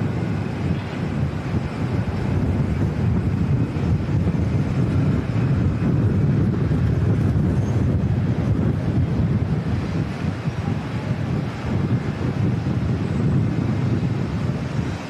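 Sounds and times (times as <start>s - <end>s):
gusty wind buffeting microphone: 0.0s - 15.0s.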